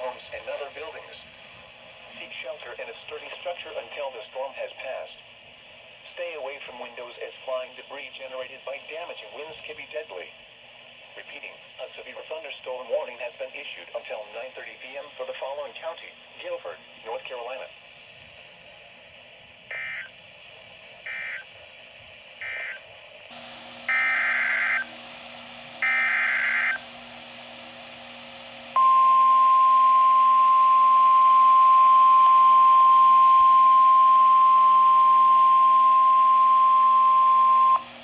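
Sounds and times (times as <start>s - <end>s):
radio hiss and hum: 0.0s - 38.0s
loud steady warning alarm tone: 19.7s - 20.2s, 21.0s - 21.5s, 22.4s - 27.0s, 28.7s - 38.0s.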